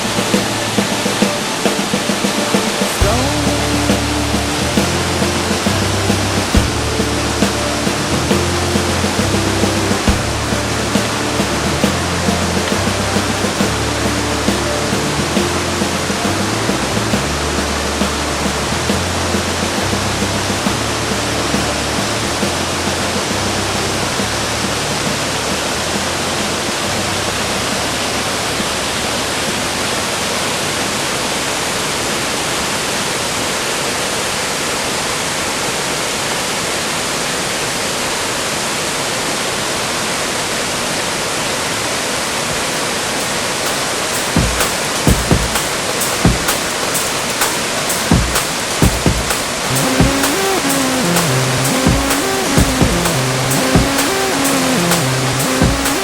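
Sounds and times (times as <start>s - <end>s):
low music notes: 0.0s - 28.8s, 44.1s - 56.0s
waterfall rushing: 0.0s - 56.0s.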